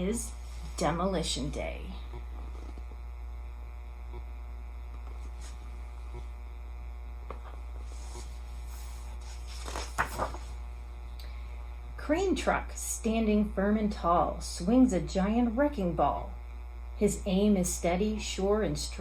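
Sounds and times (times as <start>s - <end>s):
low electrical mains hum: 0.0s - 19.0s.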